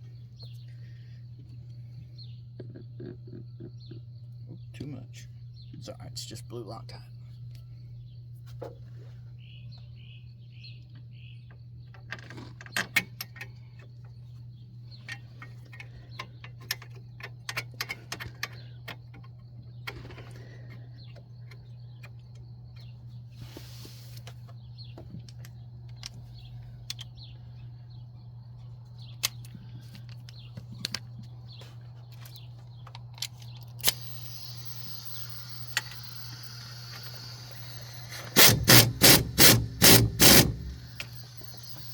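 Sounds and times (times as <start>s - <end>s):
steady low hum: 0.0s - 41.9s
bird chirps: 1.5s - 7.1s.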